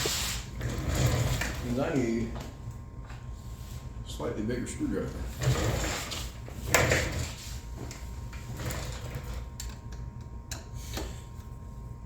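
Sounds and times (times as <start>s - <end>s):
tool drawer sliding: 0.0s - 2.0s, 5.3s - 7.6s.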